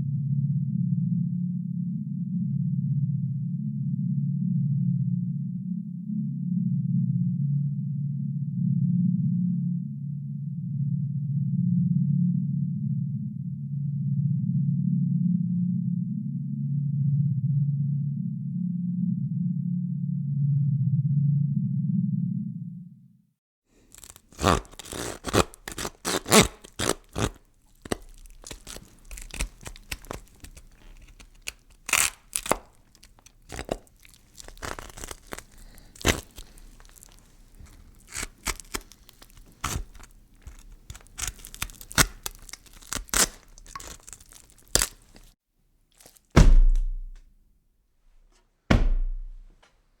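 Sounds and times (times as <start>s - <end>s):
low pitched hum: 0.0s - 23.0s
saw cutting through bone: 23.9s - 45.3s
heavy thud of dropped carcass: 46.3s - 47.2s, 48.7s - 49.5s.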